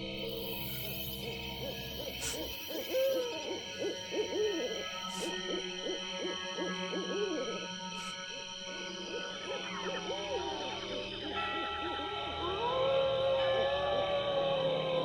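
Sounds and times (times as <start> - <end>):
held droning tones: 0.0 - 15.0
owls hooting: 1.2 - 12.7.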